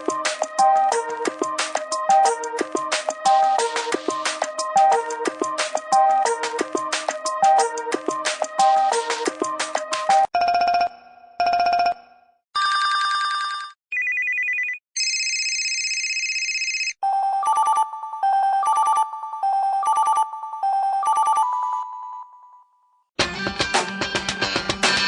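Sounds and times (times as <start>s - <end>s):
phone ringtones: 12.6s - 22.6s.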